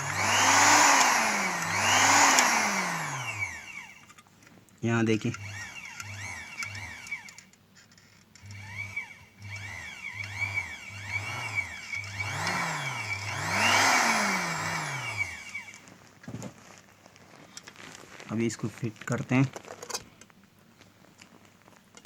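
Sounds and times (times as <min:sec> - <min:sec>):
sewing machine motor: 0:00.0 - 0:04.0, 0:05.2 - 0:07.5, 0:08.4 - 0:15.8.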